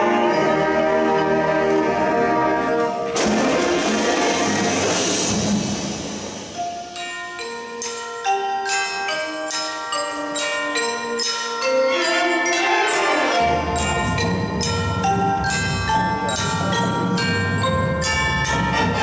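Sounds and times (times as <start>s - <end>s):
marching band playing: 0.0s - 6.6s, 11.9s - 19.0s
mallet percussion melody: 0.0s - 19.0s.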